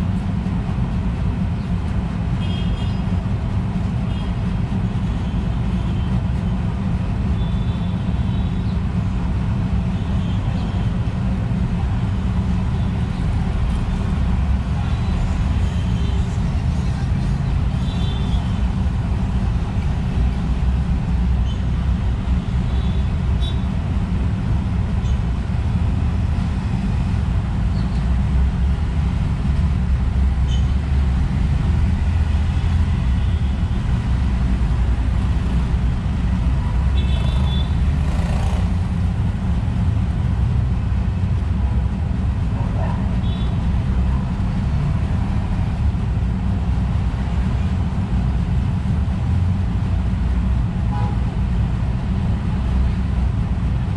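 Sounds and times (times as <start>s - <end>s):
road traffic rumble: 0.0s - 53.9s.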